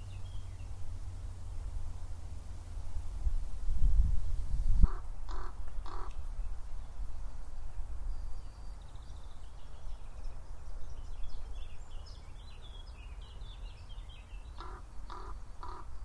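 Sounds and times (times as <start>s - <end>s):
small songbirds twittering: 0.0s - 16.0s
raven harsh calls: 4.8s - 6.2s, 14.6s - 16.0s.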